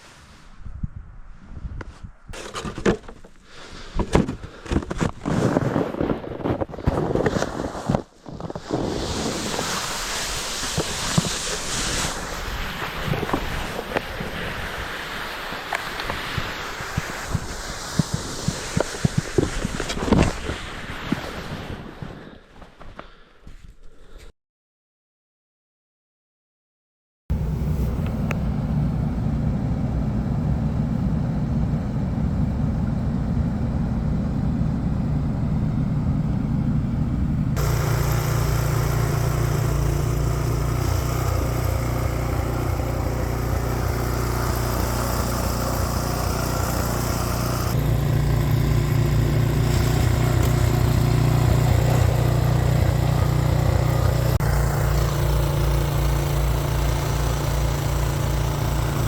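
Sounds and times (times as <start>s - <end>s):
engine running: 27.3s - 59.0s.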